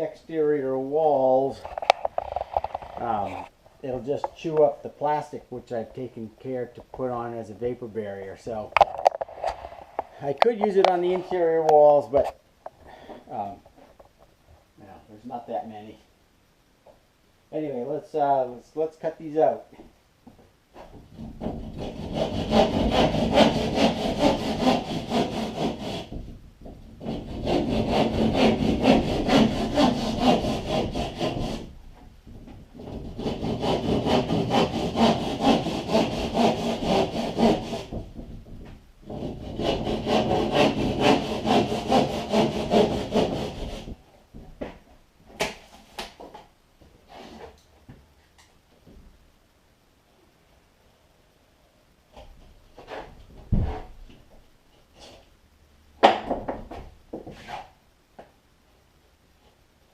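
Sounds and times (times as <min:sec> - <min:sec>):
hand saw cutting drywall: 0:21.2 - 0:26.3, 0:27.0 - 0:31.7, 0:32.8 - 0:38.2, 0:39.0 - 0:44.0.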